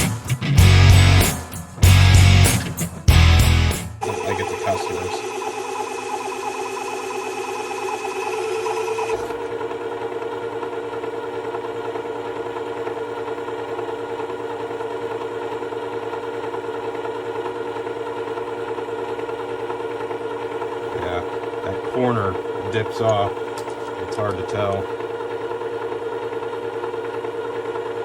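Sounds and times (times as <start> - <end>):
sharpener motor humming: 4.0 - 13.0, 18.3 - 26.9.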